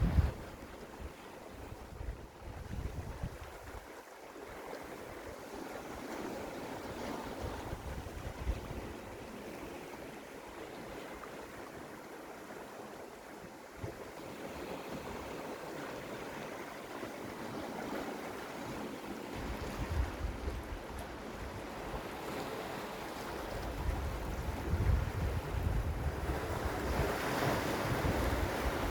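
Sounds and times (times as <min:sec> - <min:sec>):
wind buffeting microphone: 0:00.0 - 0:00.8, 0:01.6 - 0:03.8, 0:07.4 - 0:09.1, 0:19.3 - 0:22.4, 0:23.2 - 0:28.9
waves washing over rocks: 0:13.8 - 0:28.9.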